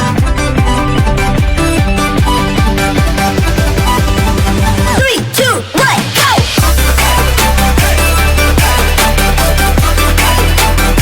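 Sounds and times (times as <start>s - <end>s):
swooping synth tones: 0.0s - 5.0s
heavy bass and beat: 0.0s - 11.0s.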